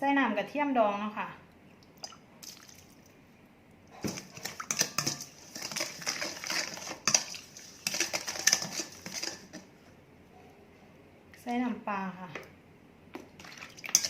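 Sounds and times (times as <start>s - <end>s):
spoon scraping against a bowl: 4.0s - 9.7s.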